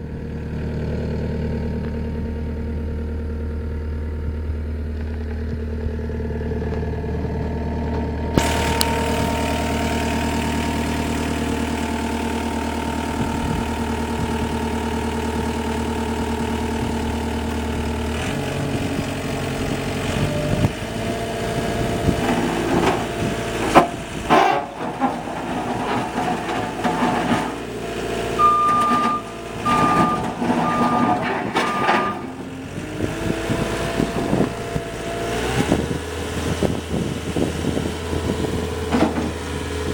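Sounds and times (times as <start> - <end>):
diesel engine running: 0.0 - 39.9
machine clanking and knocking: 22.1 - 27.7, 28.4 - 32.7, 38.9 - 39.4
reversing alarm beeping: 28.4 - 32.4.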